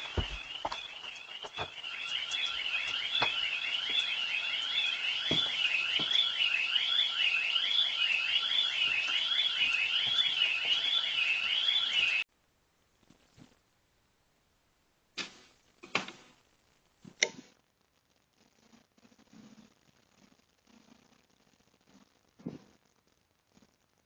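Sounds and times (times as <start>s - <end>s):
car alarm siren warbling: 0.0s - 12.2s.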